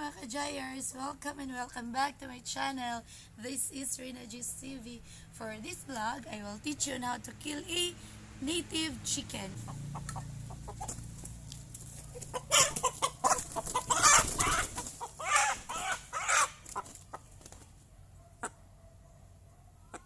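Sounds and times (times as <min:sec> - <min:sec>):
chicken squawking and clucking: 0:09.6 - 0:17.4, 0:18.4 - 0:18.6, 0:19.8 - 0:20.0.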